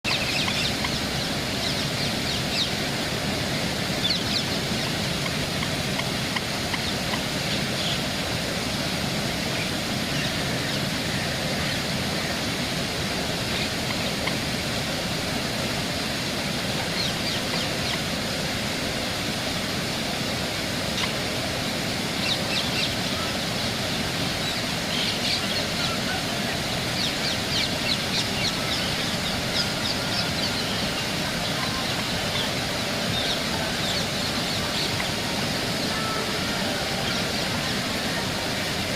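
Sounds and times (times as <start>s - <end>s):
steady rushing noise: 0.0s - 38.9s
high bird calls: 0.1s - 2.8s.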